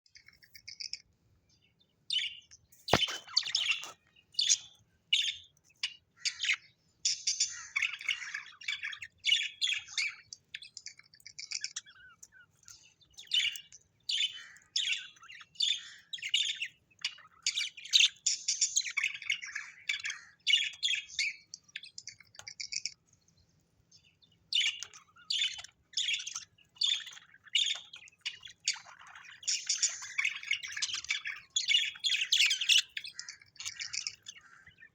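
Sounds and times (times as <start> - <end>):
parrots chirping and chattering: 0.1 - 34.9
sharp click: 2.9 - 3.3.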